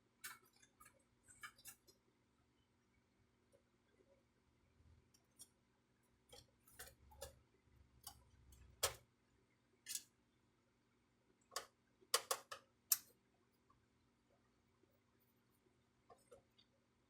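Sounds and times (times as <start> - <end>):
plastic printer parts clicking: 8.0 - 9.0.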